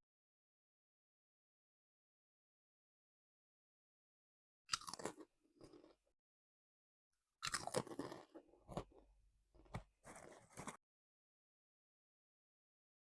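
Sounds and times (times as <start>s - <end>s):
chips being crunched: 7.4s - 8.9s.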